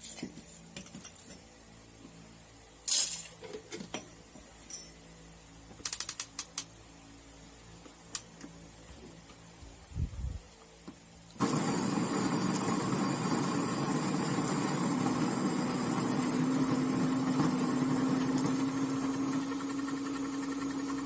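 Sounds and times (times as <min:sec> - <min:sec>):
coffee grinder grinding beans: 0:11.4 - 0:21.0
motor whine: 0:11.4 - 0:21.0.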